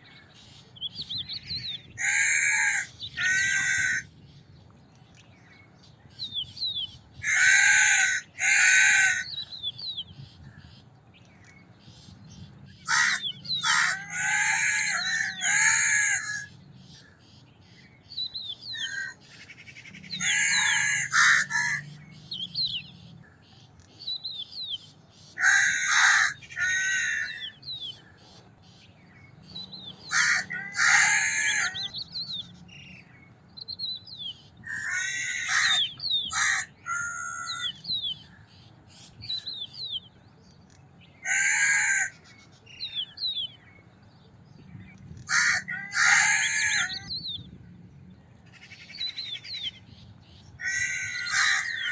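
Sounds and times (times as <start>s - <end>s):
crows cawing: 2.0s - 4.1s, 7.2s - 9.4s, 12.8s - 16.5s, 18.8s - 19.2s, 20.2s - 21.9s, 25.4s - 27.6s, 30.0s - 31.9s, 34.6s - 37.8s, 41.2s - 42.4s, 45.3s - 47.1s, 50.6s - 51.9s.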